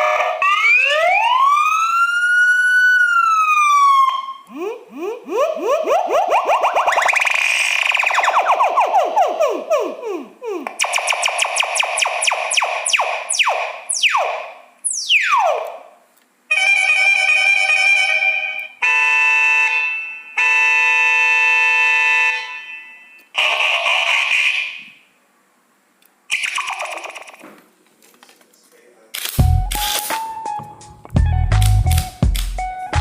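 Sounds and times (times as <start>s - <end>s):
electronic falling sweeps: 4.6s - 15.8s, 26.3s - 27.4s
electronic horn blasts: 16.5s - 24.8s.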